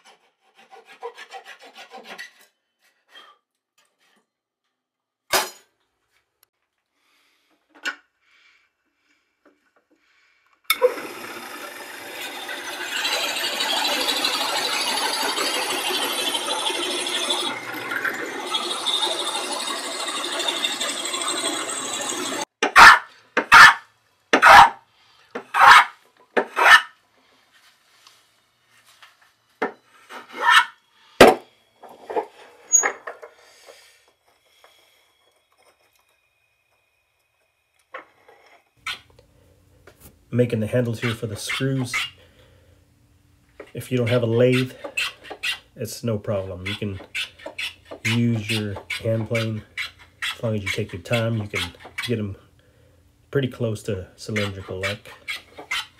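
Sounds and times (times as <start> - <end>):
hand tool rasping wood: 0.0 - 2.5, 10.8 - 22.5, 44.0 - 45.6, 46.6 - 52.2.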